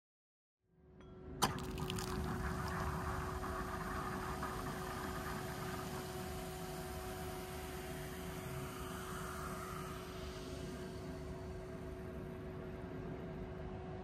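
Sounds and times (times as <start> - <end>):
hot spring water rushing into bath: 1.4 - 8.5
low hum: 1.4 - 12.9.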